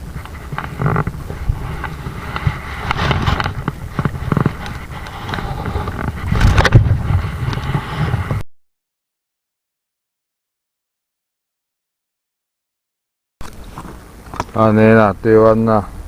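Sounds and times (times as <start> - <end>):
strong wind buffeting microphone: 0.0 - 8.4.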